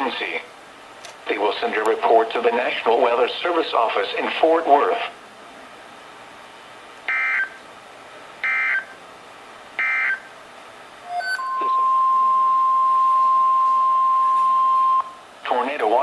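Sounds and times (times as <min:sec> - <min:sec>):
steady single-pitch alert tone: 0:11.0 - 0:15.2
warbling data tones: 0:11.0 - 0:15.2.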